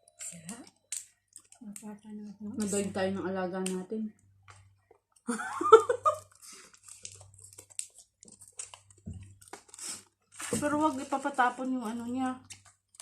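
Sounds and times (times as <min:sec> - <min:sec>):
person giggling: 0:05.3 - 0:06.3
fried chicken crunching while chewed: 0:06.2 - 0:10.2.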